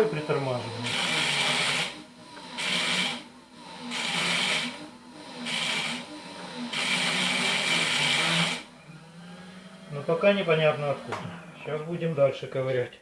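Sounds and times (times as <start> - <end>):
hub motor humming: 0.0 - 12.0.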